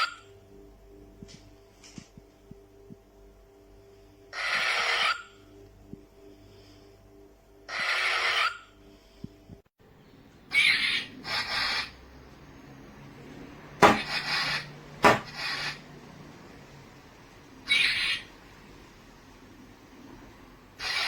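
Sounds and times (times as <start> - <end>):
lightsaber clash hits: 13.8 - 14.2.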